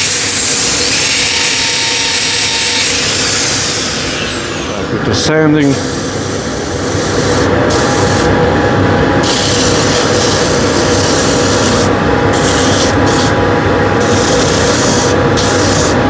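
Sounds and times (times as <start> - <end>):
dust extractor humming: 0.0 - 16.0
sandpaper rubbing on wood: 9.4 - 13.4.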